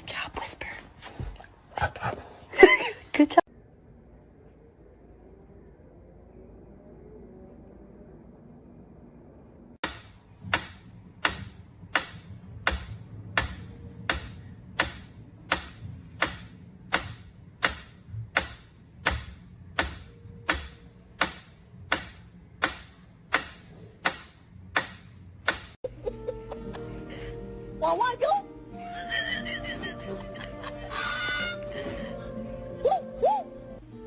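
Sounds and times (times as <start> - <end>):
faint low hum: 0.0 - 9.8.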